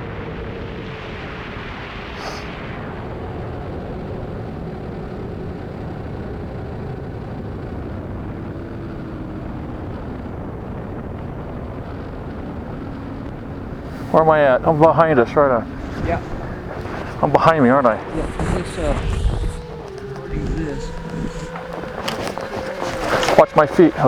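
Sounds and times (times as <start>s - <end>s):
faint hum sinking in pitch: 0.0s - 24.0s
wind rumble on microphone: 0.0s - 24.0s
brief rustle: 18.1s - 24.0s.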